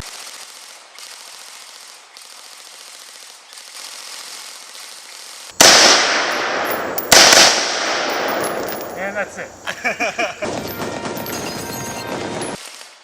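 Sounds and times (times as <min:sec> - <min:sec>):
loud burst of gunfire: 0:05.6 - 0:09.1.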